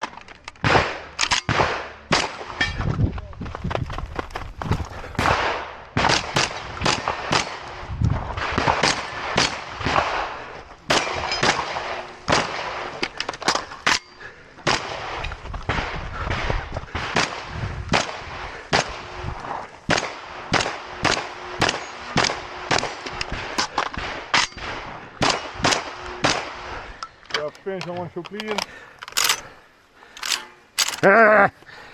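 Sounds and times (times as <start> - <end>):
shotgun shots: 29.1 - 29.5, 30.2 - 31.1.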